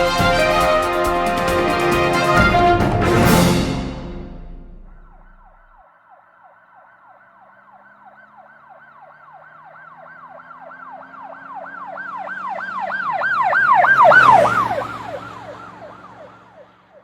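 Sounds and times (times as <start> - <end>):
music: 0.0 - 5.7
siren yelp: 5.1 - 17.0.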